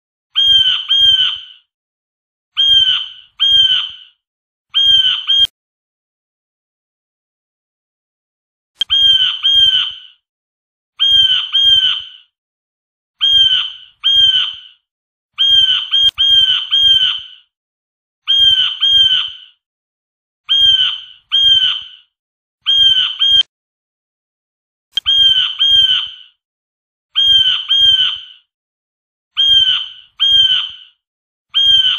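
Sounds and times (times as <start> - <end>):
blue jay calling: 0.4 - 1.6, 2.6 - 4.1, 4.8 - 5.5, 8.8 - 10.0, 11.0 - 12.2, 13.2 - 14.7, 15.4 - 17.4, 18.3 - 19.5, 20.5 - 22.0, 22.7 - 23.5, 25.0 - 26.2, 27.2 - 28.3, 29.4 - 30.8, 31.6 - 31.9.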